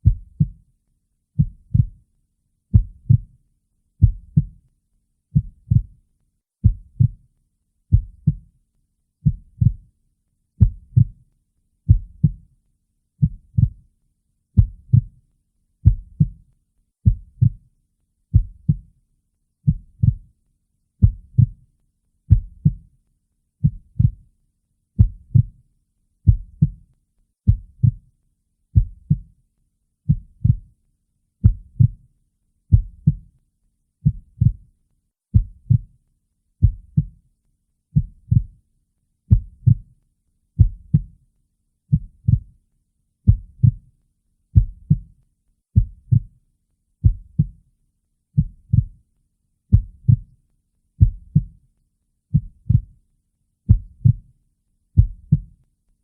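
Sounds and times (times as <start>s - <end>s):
heartbeat thumps: 1.4s - 2.0s, 2.8s - 3.3s, 4.0s - 4.6s, 5.4s - 5.9s, 6.6s - 7.2s, 7.9s - 8.4s, 11.9s - 12.4s, 15.8s - 16.4s, 17.1s - 17.6s, 18.4s - 18.8s, 21.0s - 21.6s, 23.6s - 24.2s, 25.0s - 25.5s, 26.3s - 26.8s, 27.5s - 28.0s, 28.8s - 29.2s, 30.1s - 30.6s, 31.4s - 32.0s, 35.4s - 35.9s, 36.6s - 37.1s, 38.0s - 38.5s, 39.3s - 39.8s, 40.6s - 41.1s, 41.9s - 42.5s, 43.3s - 43.8s, 44.6s - 45.0s, 45.8s - 46.3s, 49.7s - 50.2s, 51.0s - 51.5s, 52.3s - 52.9s, 53.7s - 54.2s, 55.0s - 55.5s.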